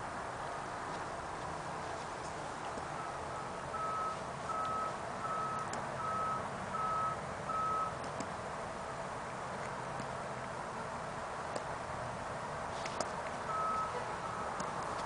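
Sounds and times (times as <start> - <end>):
vehicle reversing alarm beeping: 2.8 - 8.0, 13.4 - 15.0.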